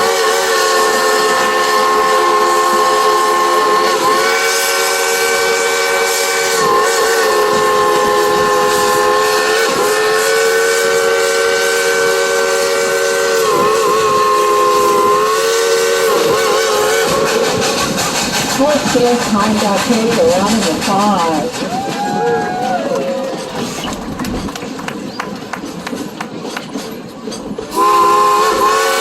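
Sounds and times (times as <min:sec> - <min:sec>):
three-chime steam whistle: 0:00.0 - 0:17.7, 0:27.7 - 0:29.0
steam hiss: 0:00.0 - 0:22.9, 0:27.7 - 0:29.0.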